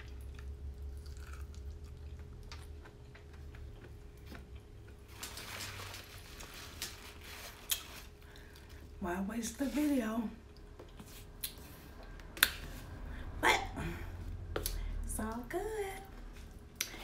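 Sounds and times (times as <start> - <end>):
person chewing: 0.0 - 5.1
low steady hum: 0.0 - 17.0.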